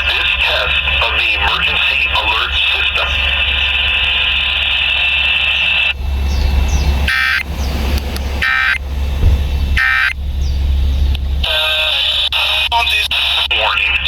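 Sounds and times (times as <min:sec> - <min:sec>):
low hum: 0:00.0 - 0:14.0
buzzing digital data bursts: 0:09.8 - 0:10.2.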